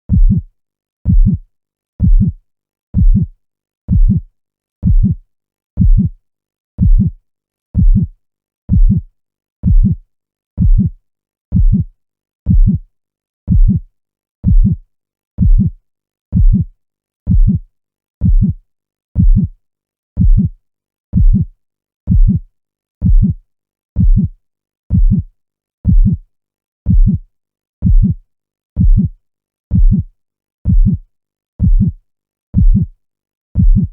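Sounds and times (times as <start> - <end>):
heartbeat thuds: 0.1 - 0.5, 1.1 - 1.4, 2.0 - 2.4, 3.0 - 3.3, 3.9 - 4.2, 4.8 - 5.2, 5.8 - 6.1, 6.8 - 7.2, 7.8 - 8.1, 8.7 - 9.0, 9.6 - 10.0, 10.6 - 10.9, 11.5 - 11.9, 12.5 - 12.8, 13.5 - 13.8, 14.4 - 14.8, 15.4 - 15.7, 16.4 - 16.7, 17.3 - 17.6, 18.2 - 18.6, 19.2 - 19.5, 20.2 - 20.5, 21.2 - 21.5, 22.1 - 22.4, 23.0 - 23.4, 24.0 - 24.3, 24.9 - 25.2, 25.9 - 26.2, 26.9 - 27.2, 27.8 - 28.2, 28.8 - 29.1, 29.7 - 30.1, 30.7 - 31.0, 31.6 - 32.0, 32.6 - 32.9, 33.6 - 33.9.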